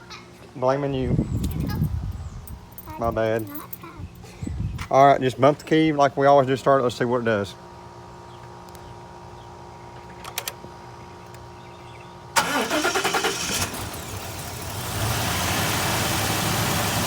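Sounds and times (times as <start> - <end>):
truck engine cranking and idling: 12.4 - 17.0.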